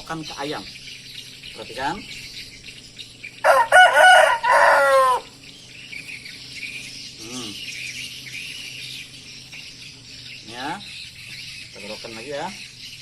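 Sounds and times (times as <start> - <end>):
chicken calling: 1.8 - 5.4.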